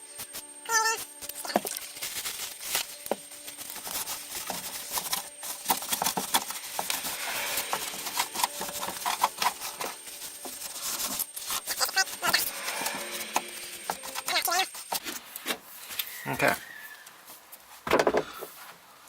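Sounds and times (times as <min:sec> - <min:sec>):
rag rubbing plastic trim: 0:03.6 - 0:15.6.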